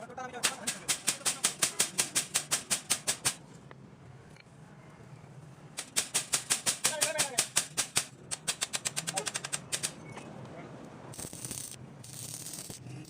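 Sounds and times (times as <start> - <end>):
rapid sharp clicks: 0.4 - 3.4, 5.8 - 10.0.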